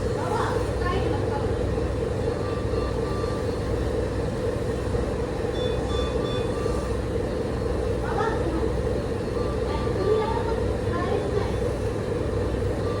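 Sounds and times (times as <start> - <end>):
medical equipment hum: 0.0 - 13.0.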